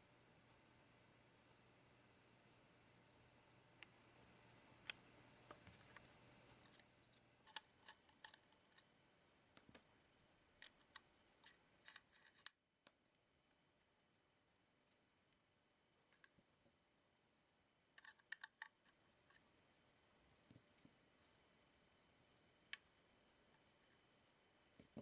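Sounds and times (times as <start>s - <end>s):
small clicks of handling parts: 6.7s - 8.9s, 10.6s - 13.0s, 16.1s - 16.4s, 18.0s - 19.5s.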